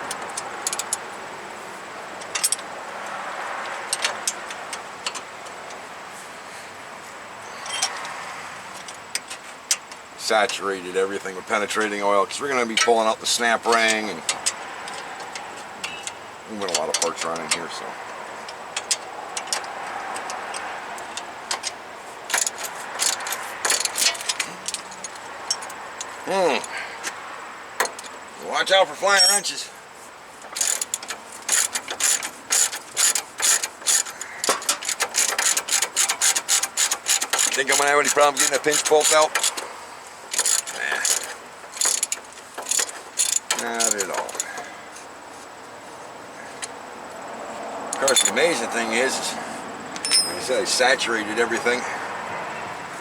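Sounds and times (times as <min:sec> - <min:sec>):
wrenches clinking on metal: 0:02.2 - 0:02.7, 0:07.5 - 0:08.2, 0:11.5 - 0:17.9, 0:18.5 - 0:26.8, 0:27.8 - 0:29.7, 0:30.4 - 0:44.8, 0:48.0 - 0:49.2, 0:50.0 - 0:52.0.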